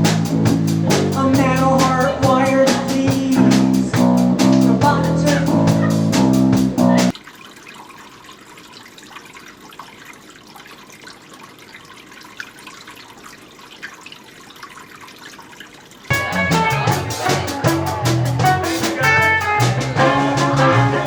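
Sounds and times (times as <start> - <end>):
band with guitar and drums: 0.0 - 7.1, 16.1 - 21.0.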